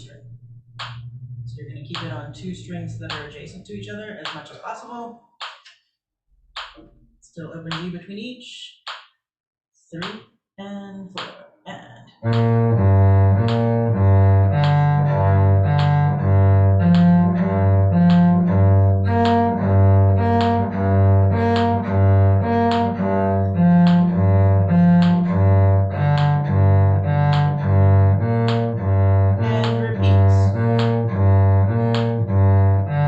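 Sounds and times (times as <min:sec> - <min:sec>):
cello bowing arpeggio: 0:12.2 - 0:33.0.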